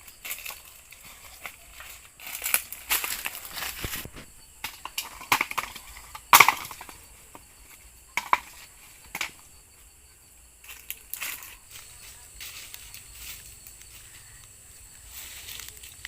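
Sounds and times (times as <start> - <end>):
crunching and crackling: 0.0 - 7.5, 10.6 - 16.0.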